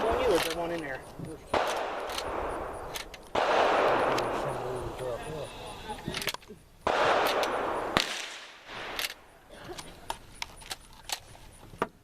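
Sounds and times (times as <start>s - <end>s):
metallic clicks of gun handling: 0.3s - 0.9s, 1.6s - 3.3s, 6.1s - 6.5s, 8.9s - 11.8s
shotgun blast: 1.5s - 5.0s, 6.8s - 9.3s.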